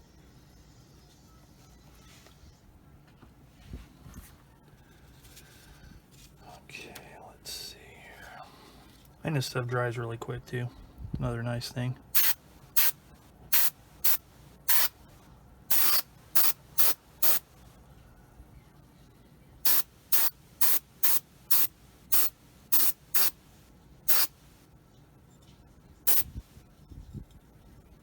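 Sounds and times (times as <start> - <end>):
airbrush spraying in hissing bursts: 12.1 - 15.0, 15.7 - 17.4, 19.6 - 23.4, 24.1 - 24.5, 26.1 - 26.4.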